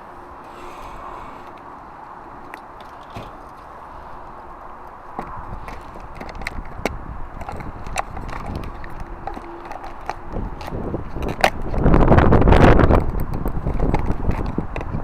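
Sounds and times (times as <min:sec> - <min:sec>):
knocks and clicks handling guttering: 0:05.1 - 0:11.9.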